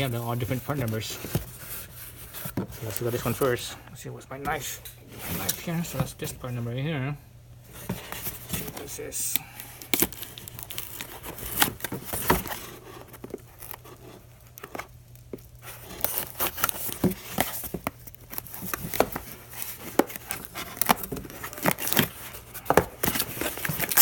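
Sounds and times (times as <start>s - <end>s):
packaging crinkling and tearing: 2.8s - 3.7s, 7.9s - 24.0s.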